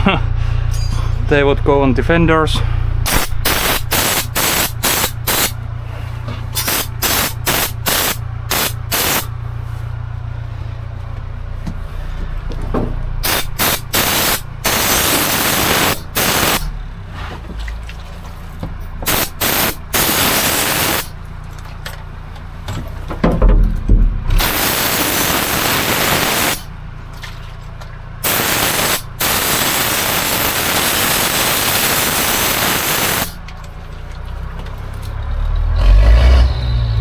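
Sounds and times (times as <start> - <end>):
aerosol spray can spraying: 3.1 - 5.6, 6.6 - 9.3, 13.2 - 16.7, 19.0 - 21.1, 24.4 - 26.7, 28.2 - 33.4.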